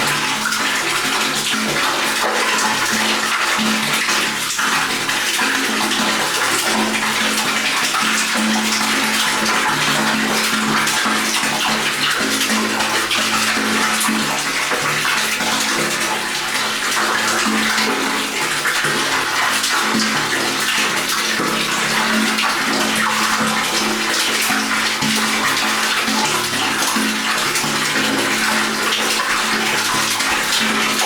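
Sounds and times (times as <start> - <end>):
water pouring into tank: 0.0 - 31.0.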